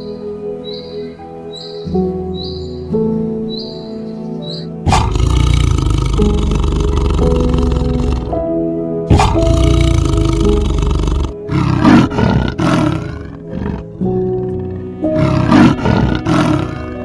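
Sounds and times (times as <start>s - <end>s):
background music with sustained notes: 0.0s - 17.0s
animal roars: 4.9s - 8.4s, 9.1s - 17.0s.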